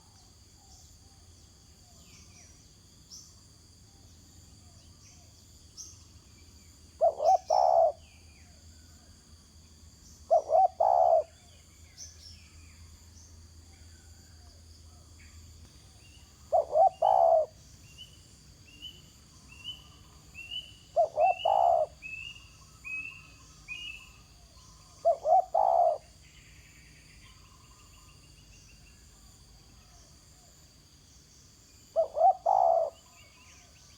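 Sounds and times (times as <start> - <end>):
high insect-like hiss: 0.0 - 33.9
small birds chirping: 4.8 - 8.6, 10.0 - 12.9, 15.2 - 30.5, 31.1 - 33.9
dove cooing: 7.0 - 8.0, 10.3 - 11.4, 16.4 - 17.6, 20.4 - 24.0, 24.8 - 26.2, 31.9 - 33.7.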